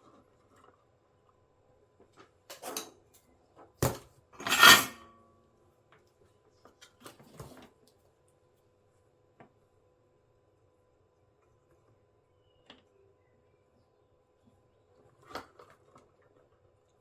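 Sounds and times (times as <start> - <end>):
metal tools clattering: 2.5 - 2.9, 4.4 - 5.1.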